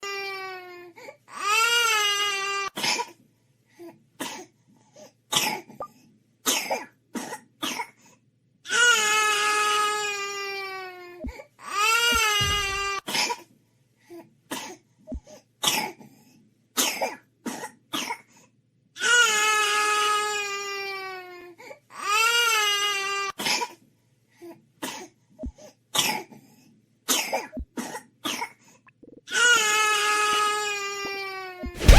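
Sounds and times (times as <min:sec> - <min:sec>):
baby coughing: 0:06.5 - 0:06.8.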